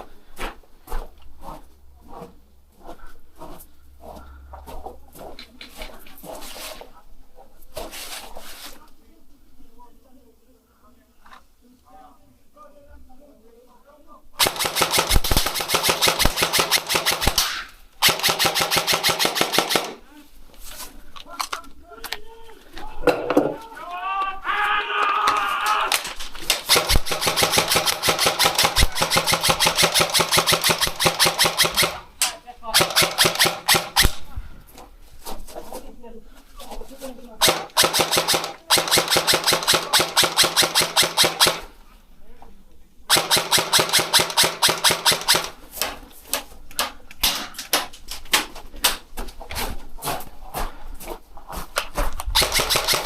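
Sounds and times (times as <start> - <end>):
airsoft gun firing full-auto: 14.4 - 20.0, 26.5 - 32.1, 32.7 - 34.3, 37.4 - 41.7, 43.1 - 45.6, 52.3 - 53.0
person shouting: 23.6 - 26.0.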